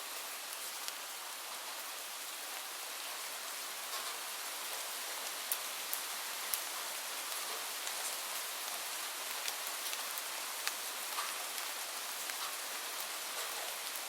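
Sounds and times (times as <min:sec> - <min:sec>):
light rain hissing: 0:00.0 - 0:14.0
raindrops ticking: 0:03.9 - 0:14.0.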